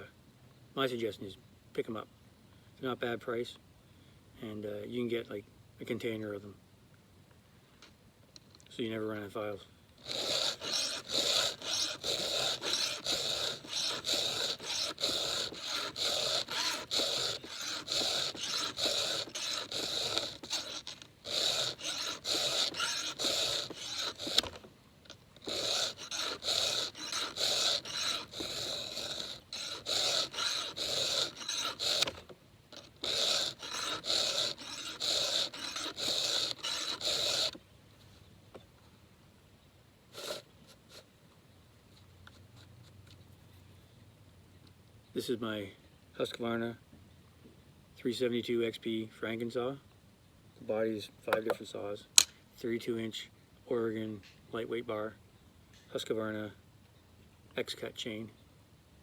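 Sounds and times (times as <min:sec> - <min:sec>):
file rasping on saw chain: 0:10.0 - 0:24.7, 0:25.4 - 0:37.6, 0:40.2 - 0:41.0.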